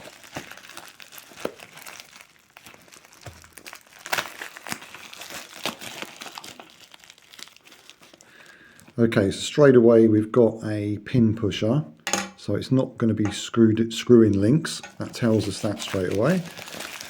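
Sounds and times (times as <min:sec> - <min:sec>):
packaging crinkling and tearing: 0:00.0 - 0:09.0, 0:14.3 - 0:17.0.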